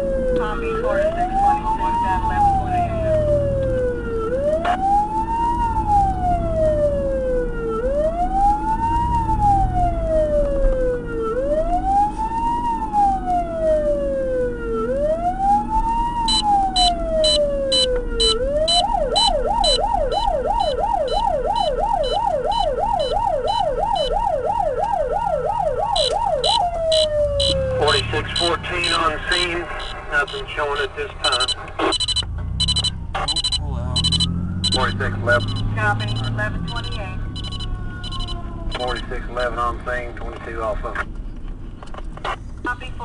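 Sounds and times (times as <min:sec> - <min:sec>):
fire truck siren wailing and yelping: 0:00.0 - 0:39.7
engine rumble: 0:00.0 - 0:43.0
rapid high beeping: 0:16.3 - 0:24.2, 0:25.9 - 0:39.6.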